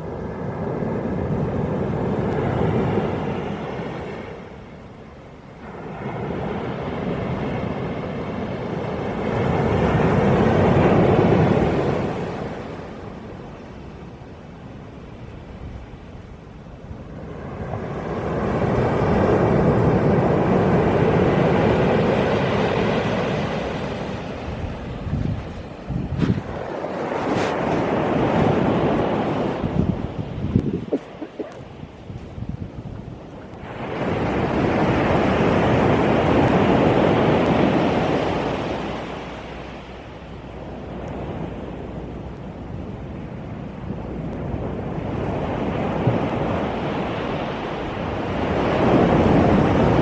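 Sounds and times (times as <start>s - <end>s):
wave surging up pebble beach: 5.4s - 14.0s, 17.1s - 31.9s, 33.5s - 42.8s.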